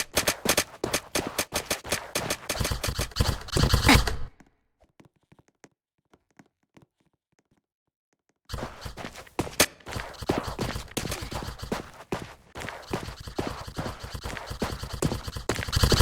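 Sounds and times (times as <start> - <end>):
airsoft gun bursts: 0.0 - 4.3, 8.5 - 16.0.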